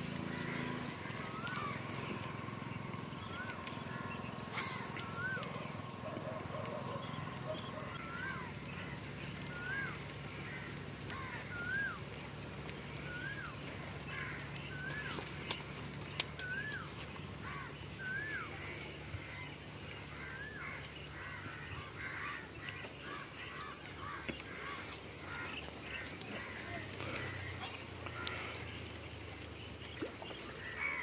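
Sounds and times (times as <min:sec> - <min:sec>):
bird calling: 0:00.0 - 0:31.0.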